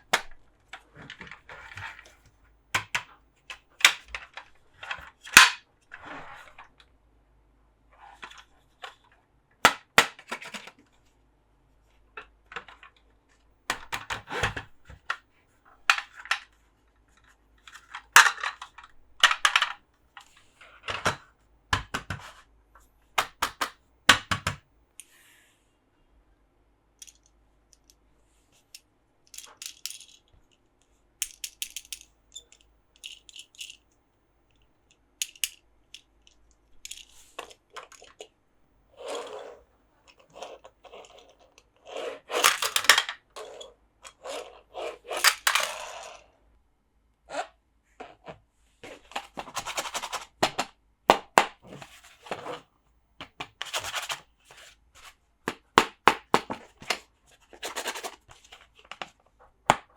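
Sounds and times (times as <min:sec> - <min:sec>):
plastic toys clicking and tapping: 0:00.0 - 0:02.2, 0:02.8 - 0:05.7, 0:08.2 - 0:10.9, 0:12.2 - 0:15.2, 0:15.8 - 0:16.5, 0:17.6 - 0:22.4, 0:23.2 - 0:25.1, 0:27.0 - 0:28.0, 0:28.7 - 0:30.6, 0:31.2 - 0:33.9, 0:34.8 - 0:38.4, 0:40.0 - 0:44.5, 0:45.2 - 0:46.0, 0:53.2 - 0:59.9.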